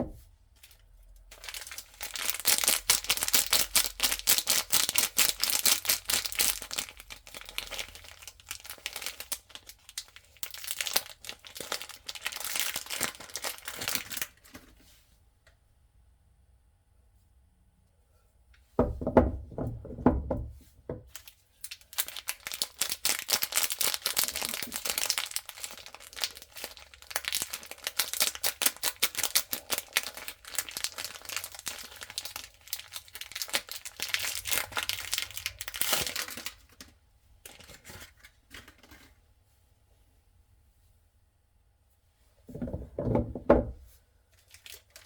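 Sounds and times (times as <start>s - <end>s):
wrapper crinkling and tearing: 0.6s - 14.7s, 21.1s - 39.0s, 44.3s - 45.0s.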